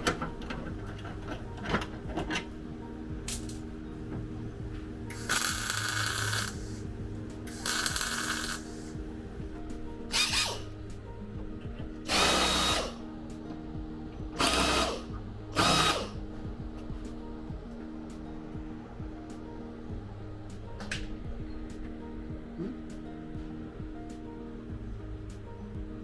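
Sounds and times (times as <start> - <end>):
background music with steady tones: 0.0 - 26.0
power tool bursts: 5.1 - 6.7, 7.5 - 8.9, 10.1 - 10.7, 12.1 - 13.0, 14.4 - 16.2.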